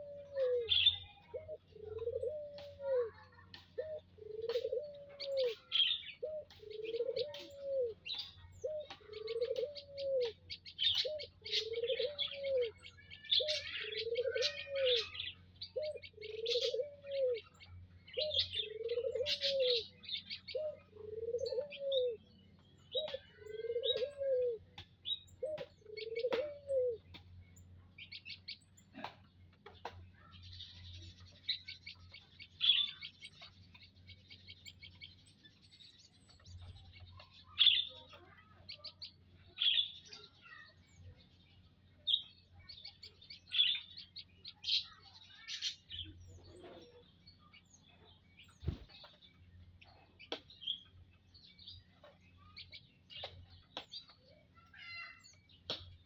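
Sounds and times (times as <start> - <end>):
dove cooing: 0.0 - 22.2, 22.9 - 24.7, 25.4 - 27.1
small birds chirping: 0.0 - 56.0.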